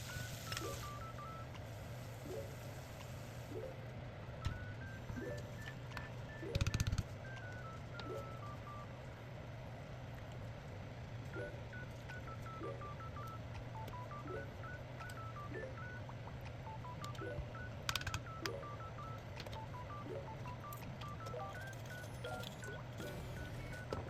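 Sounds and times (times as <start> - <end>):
beeping melody: 4.5 - 8.9, 11.4 - 24.0.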